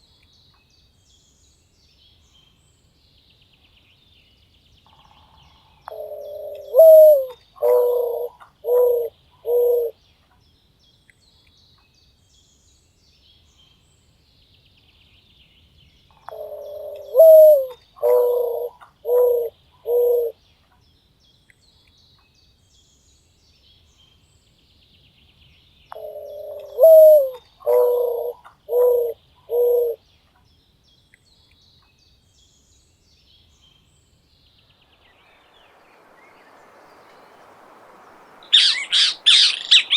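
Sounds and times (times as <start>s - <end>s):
dove cooing: 5.9s - 9.9s, 16.3s - 20.3s, 26.0s - 30.0s, 35.3s - 39.9s.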